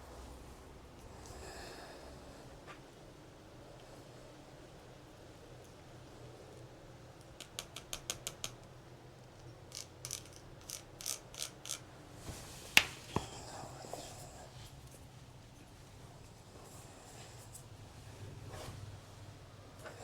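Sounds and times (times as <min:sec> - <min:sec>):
light sharp taps: 0:12.7 - 0:13.4.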